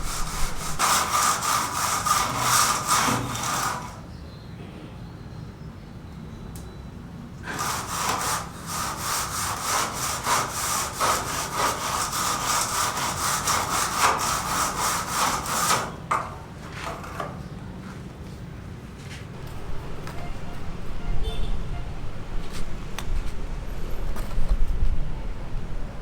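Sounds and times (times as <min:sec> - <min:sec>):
hand saw strokes: 0:00.0 - 0:04.0, 0:07.4 - 0:16.0.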